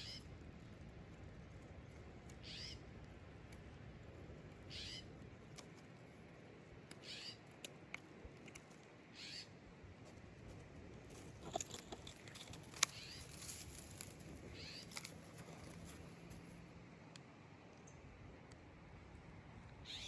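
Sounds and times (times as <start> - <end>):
faint outdoor background: 0.0 - 20.0
high-pitched animal calls: 2.4 - 2.8, 4.7 - 5.1, 9.1 - 9.6.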